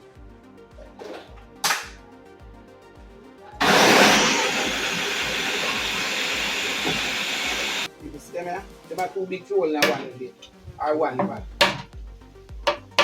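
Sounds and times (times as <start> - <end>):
background music with steady beat: 0.0 - 13.0
food sizzling in a hot pot: 3.6 - 7.9.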